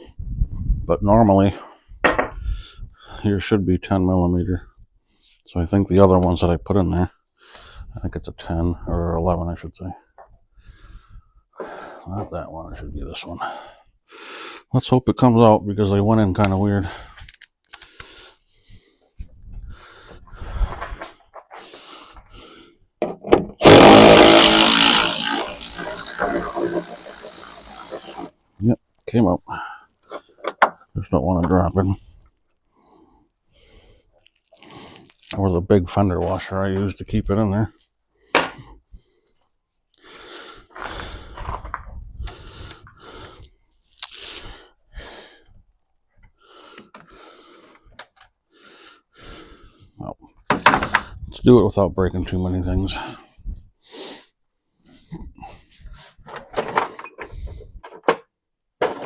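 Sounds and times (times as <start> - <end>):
power tool motor running: 23.6 - 28.3.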